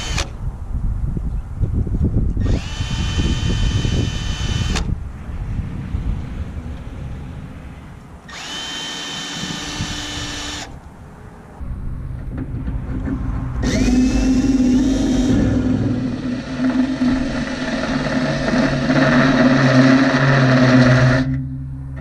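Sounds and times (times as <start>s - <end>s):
power drill whining: 0.0s - 0.3s, 2.4s - 4.9s, 8.3s - 10.8s, 13.6s - 21.3s.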